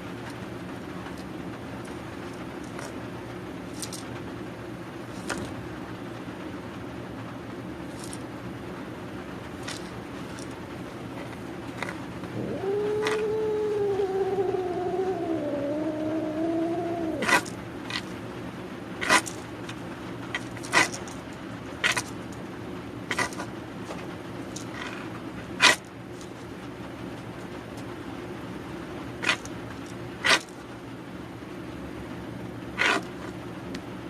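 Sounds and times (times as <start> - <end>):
steady low hum: 0.0 - 34.0
cat growling: 12.2 - 17.6.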